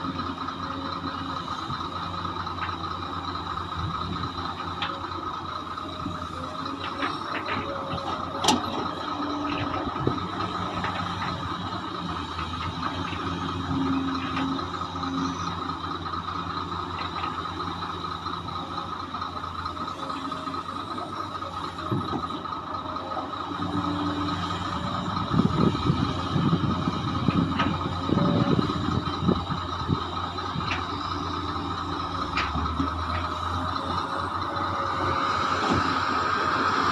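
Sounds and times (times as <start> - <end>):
excavator diesel engine whining: 0.0 - 36.9.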